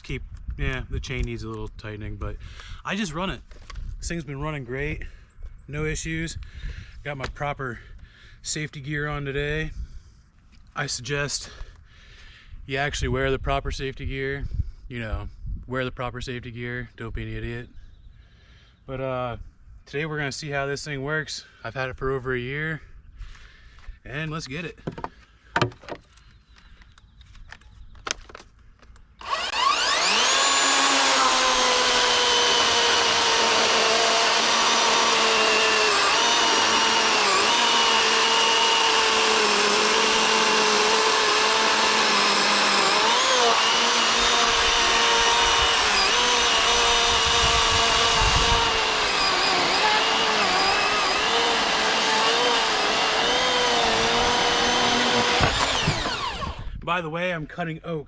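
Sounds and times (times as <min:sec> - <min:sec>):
electric chainsaw cutting wood: 0:29.2 - 0:56.6.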